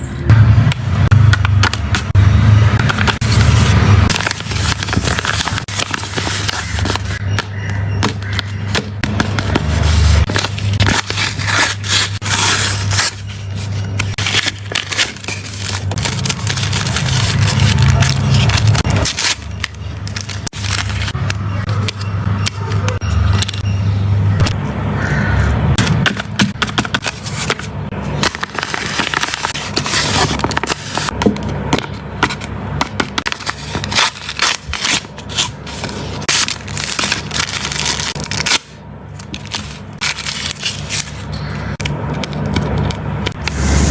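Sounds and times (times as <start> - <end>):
plastic packaging crinkling: 2.8 - 7.2, 9.2 - 23.6, 27.0 - 31.2, 33.2 - 41.3.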